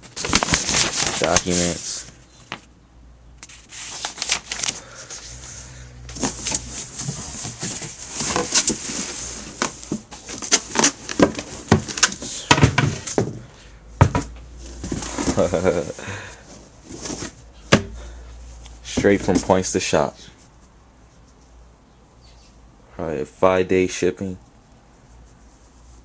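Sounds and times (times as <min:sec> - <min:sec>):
paper crinkling and rustling: 0:00.0 - 0:02.7, 0:03.4 - 0:05.5, 0:06.1 - 0:13.3, 0:14.6 - 0:15.9.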